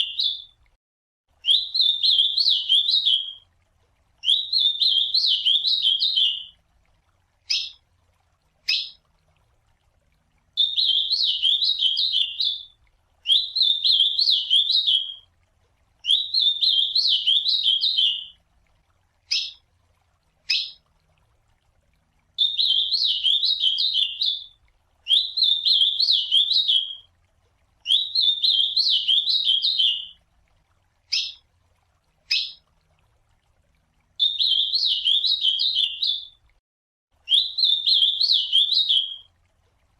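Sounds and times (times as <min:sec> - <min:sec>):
bird singing warbled phrases: 0:00.0 - 0:00.6, 0:01.4 - 0:03.4, 0:04.2 - 0:06.6, 0:07.4 - 0:07.8, 0:08.6 - 0:09.0, 0:10.6 - 0:15.2, 0:16.0 - 0:18.4, 0:19.3 - 0:19.6, 0:20.5 - 0:20.9, 0:22.4 - 0:27.1, 0:27.8 - 0:30.2, 0:31.1 - 0:31.4, 0:32.3 - 0:32.6, 0:34.2 - 0:36.4, 0:37.3 - 0:39.3.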